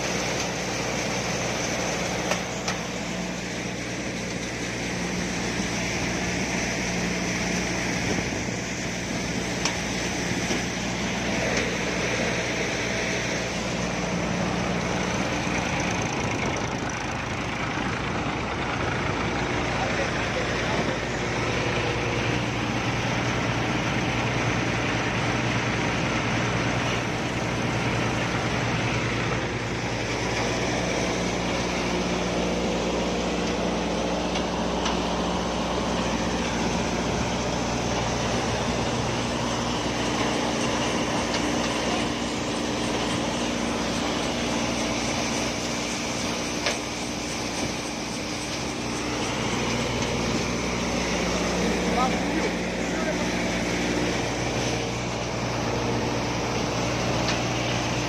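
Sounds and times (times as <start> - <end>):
engine droning: 0.0 - 58.0.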